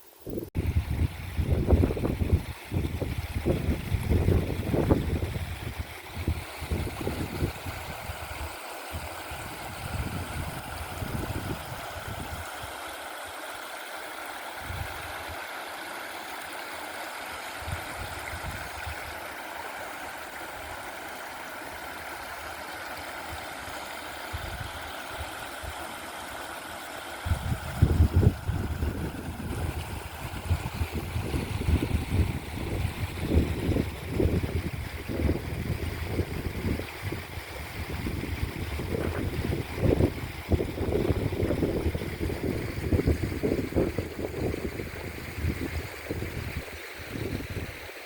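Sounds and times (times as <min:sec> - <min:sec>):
stream water flowing: 0:00.0 - 0:48.0
wind rumbling on microphone: 0:00.2 - 0:12.5, 0:14.6 - 0:15.4, 0:17.6 - 0:19.2, 0:24.3 - 0:25.8, 0:27.2 - 0:47.8.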